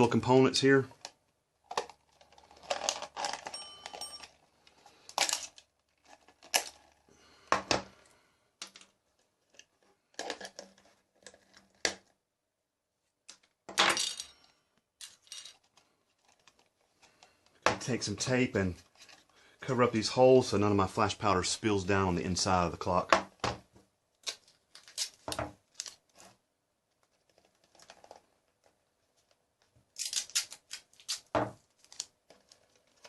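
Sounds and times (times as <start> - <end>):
small metal parts clinking: 2.3 - 4.5, 5.1 - 6.9, 13.9 - 16.6, 30.0 - 31.2.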